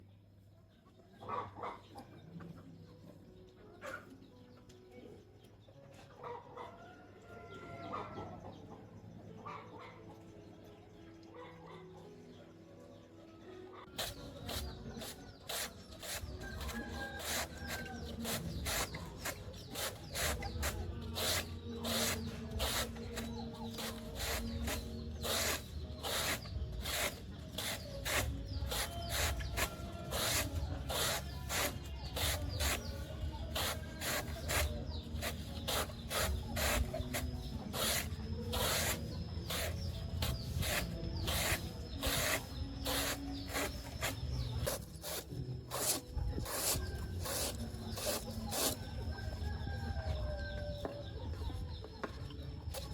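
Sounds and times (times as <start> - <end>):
blade chopping banana stem: 14.0 - 48.8.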